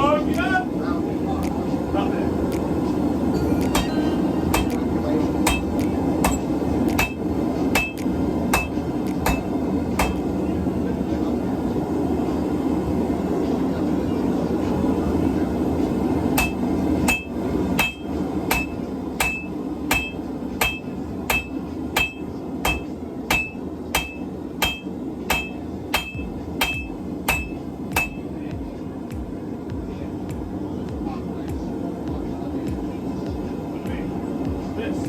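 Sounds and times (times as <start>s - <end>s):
hammer striking steel on anvil: 3.4s - 4.8s, 5.4s - 10.3s, 16.4s - 28.3s.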